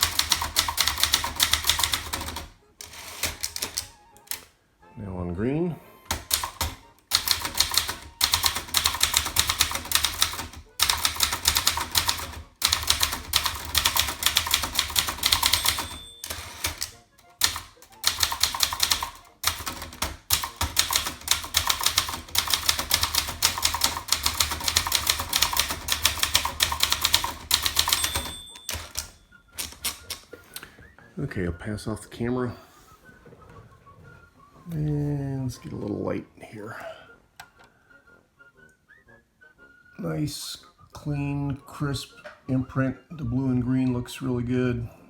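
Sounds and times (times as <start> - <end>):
typewriter keys striking: 0.0 - 4.4, 6.1 - 30.3
typewriter bell ding: 6.3 - 30.2.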